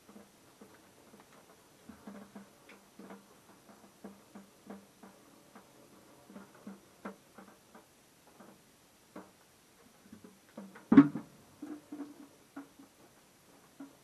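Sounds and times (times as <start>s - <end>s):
light clicks and taps: 0.0s - 10.9s.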